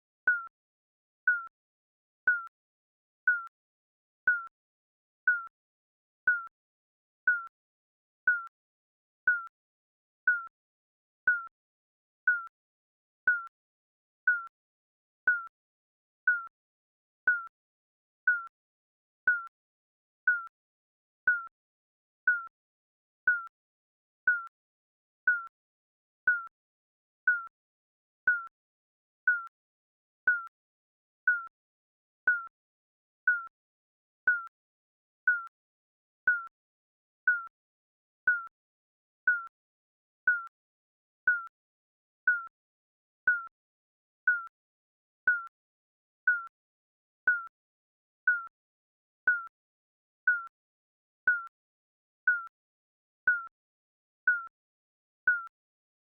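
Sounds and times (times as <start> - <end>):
timer beeping: 0.3 - 0.5, 2.3 - 2.5, 3.3 - 3.5, 5.3 - 5.5, 6.3 - 6.5, 7.3 - 7.5, 8.3 - 8.5, 9.3 - 9.5, 10.3 - 10.5, 12.3 - 12.5, 15.3 - 15.5, 16.3 - 16.5, 17.3 - 17.5, 20.3 - 20.5, 22.3 - 22.5, 24.3 - 24.5, 25.3 - 25.5, 26.3 - 26.5, 30.3 - 30.5, 34.3 - 34.5, 38.3 - 38.5, 39.3 - 39.5, 40.3 - 40.5, 42.3 - 42.5, 43.3 - 43.5, 44.3 - 44.5, 47.3 - 47.5, 49.3 - 49.5.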